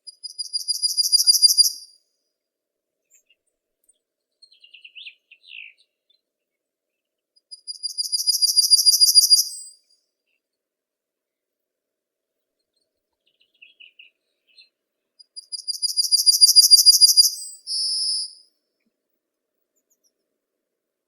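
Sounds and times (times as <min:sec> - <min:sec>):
songbird chirping and trilling: 0:00.1 - 0:01.9, 0:04.3 - 0:06.2, 0:07.5 - 0:10.4, 0:12.7 - 0:18.4.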